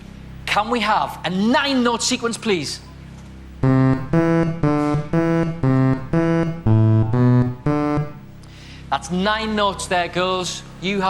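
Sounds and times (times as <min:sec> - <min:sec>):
electronic keyboard tones: 0:03.6 - 0:08.5.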